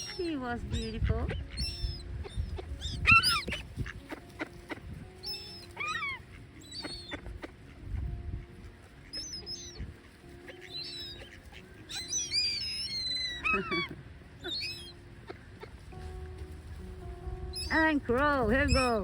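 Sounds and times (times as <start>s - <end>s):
wind buffeting microphone: 0.0s - 12.0s, 15.0s - 19.0s
seagulls calling: 0.0s - 19.0s.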